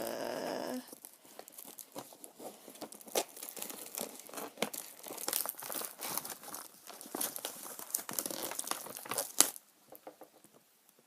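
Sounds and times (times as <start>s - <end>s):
wrapper crinkling: 0.8s - 10.4s
packaging tearing open: 0.9s - 9.6s.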